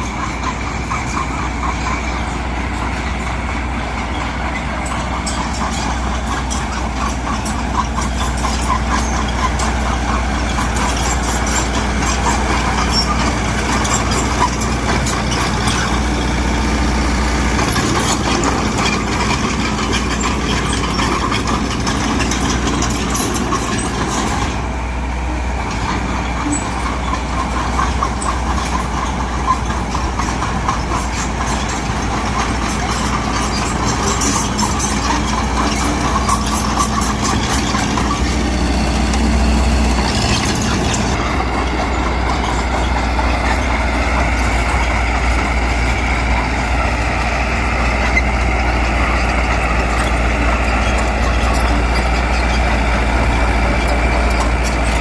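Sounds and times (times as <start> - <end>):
diesel engine running: 0.0 - 55.0
rattle of clicks: 17.6 - 24.6, 25.9 - 55.0.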